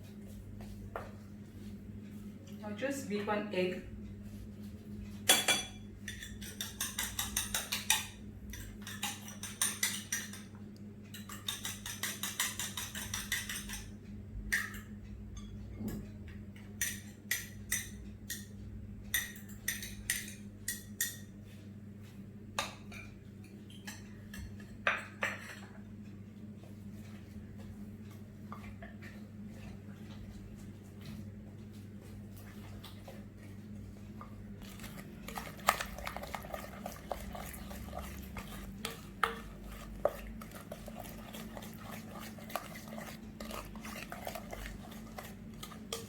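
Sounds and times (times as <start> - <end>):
egg beaten in a bowl: 5.3 - 14.9, 33.0 - 46.0.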